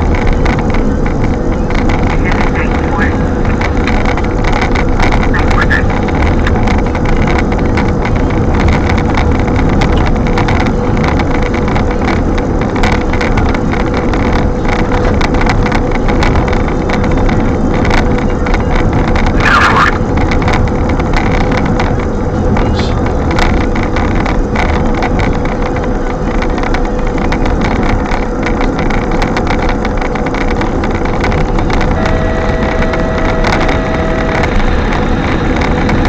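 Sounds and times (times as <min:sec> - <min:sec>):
small clicks and rattles: 0:00.0 - 0:36.0
wind on microphone: 0:00.0 - 0:36.0
faint steady hum: 0:30.4 - 0:36.0.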